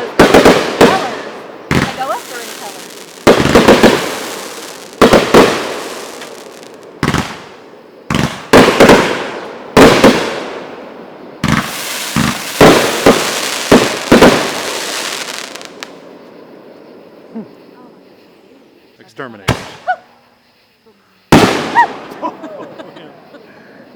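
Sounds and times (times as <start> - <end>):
firework hiss: 0.0 - 16.3
firework shells bursting with bangs: 0.0 - 16.3, 19.3 - 19.9, 21.3 - 22.4.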